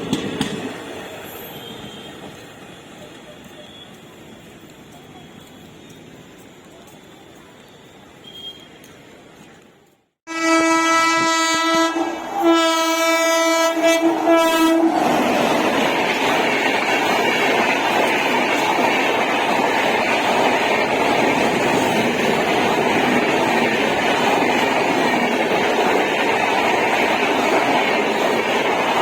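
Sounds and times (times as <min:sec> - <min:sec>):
train rumbling and clattering on rails: 0:00.0 - 0:29.0
locomotive horn blasts: 0:10.3 - 0:14.9.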